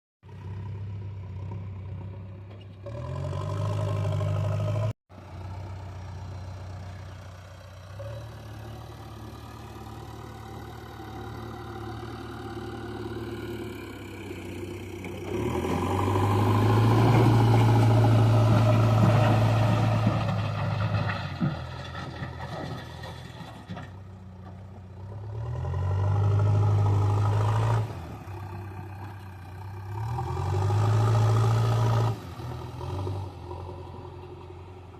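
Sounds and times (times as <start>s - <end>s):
diesel engine revving: 0.4s - 24.0s, 24.8s - 34.9s.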